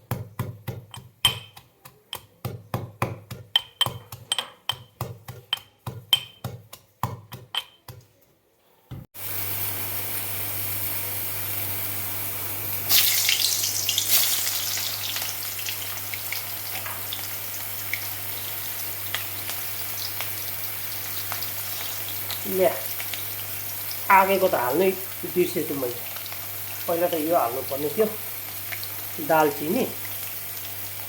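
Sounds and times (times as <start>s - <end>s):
onions sizzling in hot oil: 9.2s - 31.0s.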